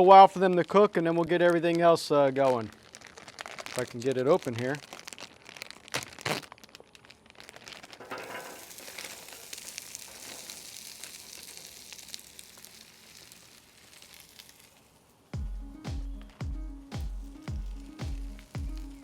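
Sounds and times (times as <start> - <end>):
plastic bag crinkling and tearing: 1.4 - 15.3, 17.2 - 19.0
food sizzling on a griddle: 7.5 - 15.3, 17.3 - 19.0.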